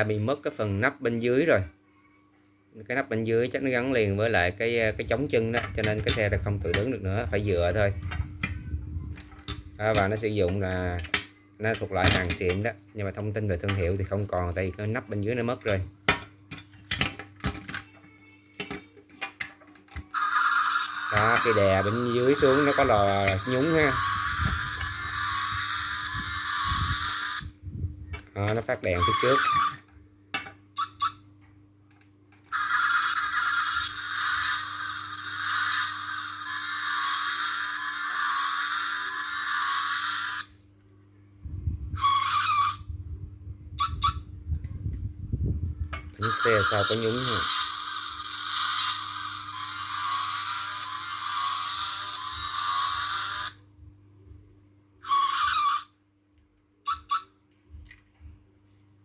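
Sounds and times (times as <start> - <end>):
toy wheel clicks: 19.8 - 27.5, 32.5 - 40.5, 46.2 - 53.6
electronic toy engine noise: 19.9 - 27.6, 28.7 - 29.9, 32.4 - 40.6, 42.0 - 42.8, 46.2 - 53.6, 55.0 - 55.9.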